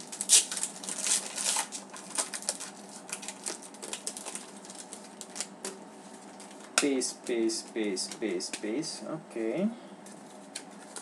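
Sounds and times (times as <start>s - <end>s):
cards flicking and rustling: 10.0s - 11.0s.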